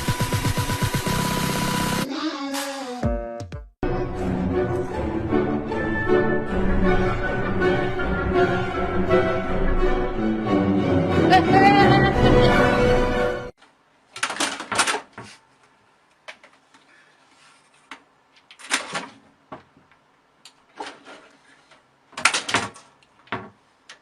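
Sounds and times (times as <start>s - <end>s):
objects knocking and rattling: 22.1s - 23.6s.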